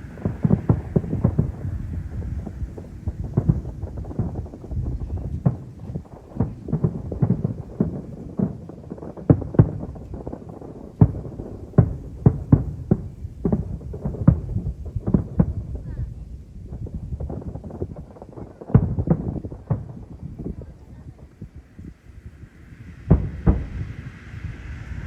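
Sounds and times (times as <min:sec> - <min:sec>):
fireworks booming and cracking: 0:00.0 - 0:25.0.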